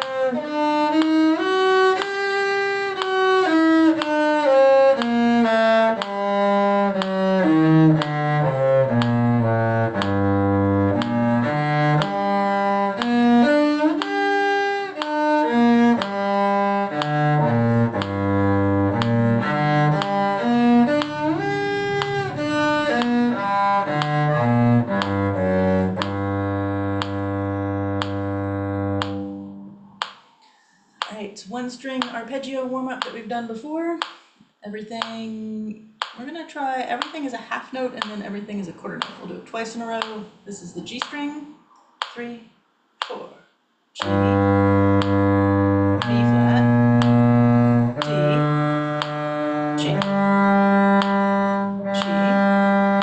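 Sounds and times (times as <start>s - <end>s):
bowed strings playing a scale: 0.0s - 30.1s, 44.0s - 53.0s.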